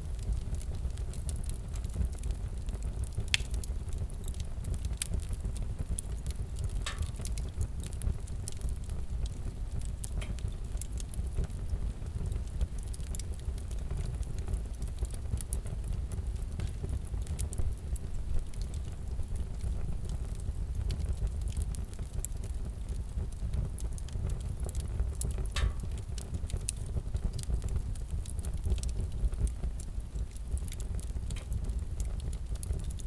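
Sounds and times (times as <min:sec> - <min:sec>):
wood fire crackling: 0:00.0 - 0:33.0.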